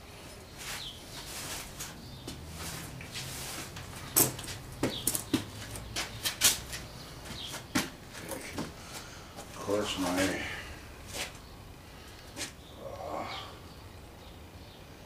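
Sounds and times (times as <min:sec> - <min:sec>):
rustle of handling: 0:00.5 - 0:09.6.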